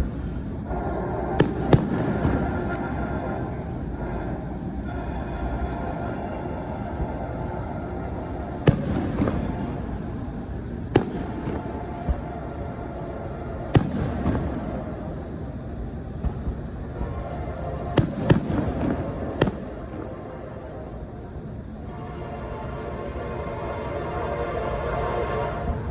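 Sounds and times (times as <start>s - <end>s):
steady low rumble: 0.0s - 24.8s
sharp bangs: 10.9s - 12.2s, 13.7s - 15.2s.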